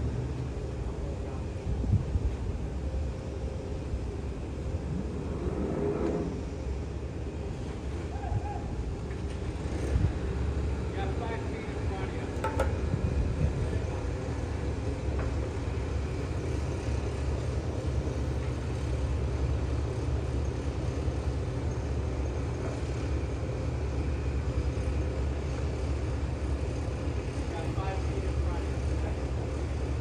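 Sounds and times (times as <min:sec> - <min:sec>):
steady low rumble: 0:00.0 - 0:22.3.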